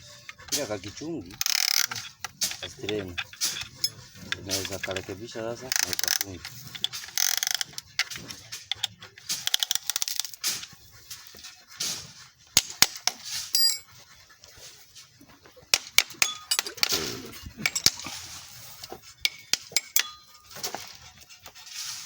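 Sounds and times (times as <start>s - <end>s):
metal tools knocking on engine parts: 0.2s - 10.8s, 12.6s - 14.0s, 15.6s - 21.2s.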